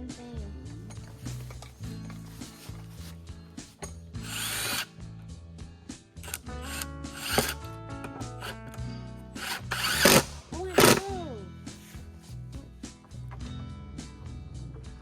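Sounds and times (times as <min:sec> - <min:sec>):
background music: 0:00.0 - 0:15.0
power drill driving screws into wood: 0:04.2 - 0:04.9, 0:06.2 - 0:07.7, 0:08.4 - 0:08.8, 0:09.4 - 0:11.0.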